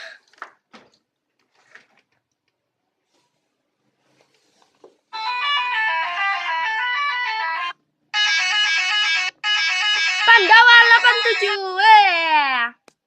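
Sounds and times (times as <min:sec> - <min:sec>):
multi-tone musical bus horn: 0:05.2 - 0:11.7.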